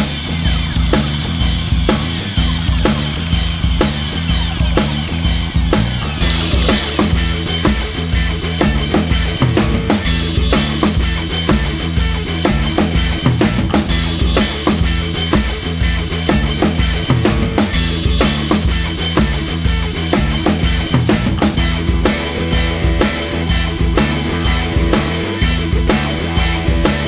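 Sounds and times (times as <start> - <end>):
driving drum kit beat: 0.0 - 27.0
repeating bass line: 0.0 - 27.0.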